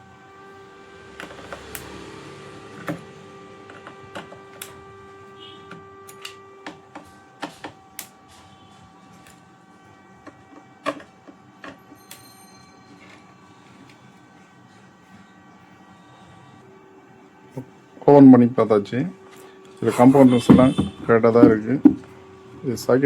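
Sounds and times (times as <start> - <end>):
faint steady hum: 0.0 - 23.0
tools knocking on amplifier casing: 20.1 - 22.1.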